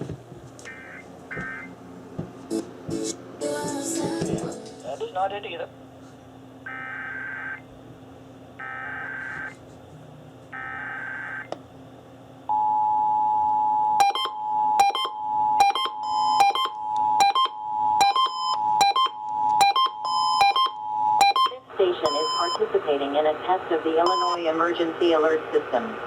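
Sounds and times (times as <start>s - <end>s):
receiver alert beeps: 12.5s - 22.6s, 24.0s - 24.5s
two-tone attention signal: 12.5s - 22.6s, 24.0s - 24.4s.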